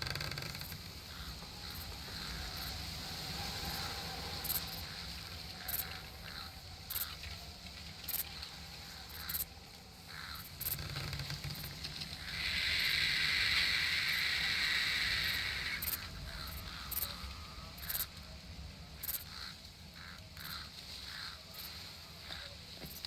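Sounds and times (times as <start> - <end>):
steady buzzing hiss: 0.0 - 23.0
low steady rumble: 11.3 - 22.7.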